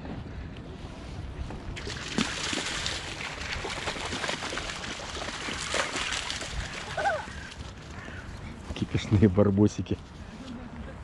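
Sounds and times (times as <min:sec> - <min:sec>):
shallow water sloshing and splashing: 0:01.8 - 0:07.9
small crackling splashes: 0:01.8 - 0:08.1.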